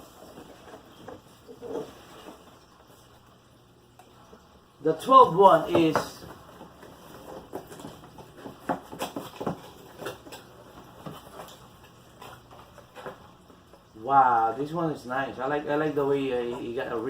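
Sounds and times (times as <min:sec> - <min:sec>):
cardboard packaging handled: 0:05.2 - 0:13.6.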